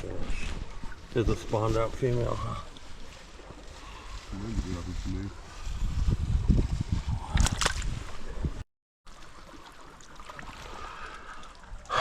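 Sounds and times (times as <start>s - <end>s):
microphone handling noise: 5.7s - 8.6s.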